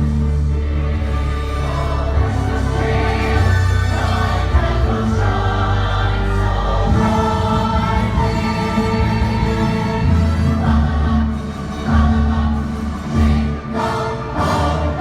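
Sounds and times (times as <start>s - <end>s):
choir singing: 0.0s - 15.0s
orchestral music: 0.0s - 15.0s.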